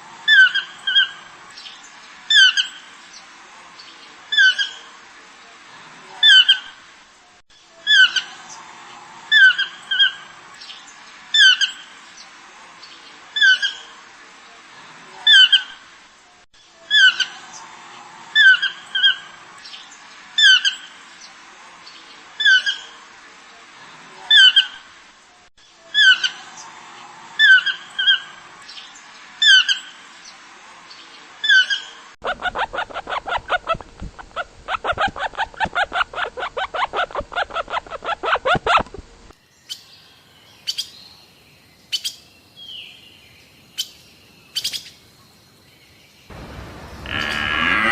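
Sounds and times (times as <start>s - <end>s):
bird squawking: 31.5s - 39.0s.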